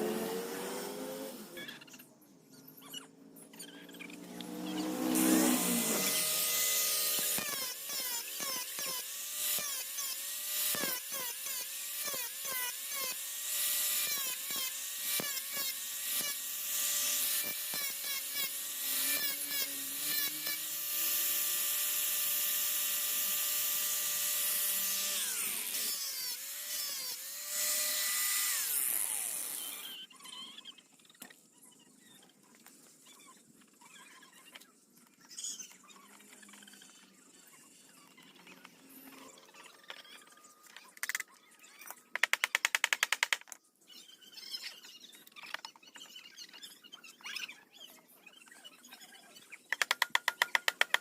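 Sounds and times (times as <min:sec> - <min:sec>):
power tool motor whining: 0:04.0 - 0:30.1.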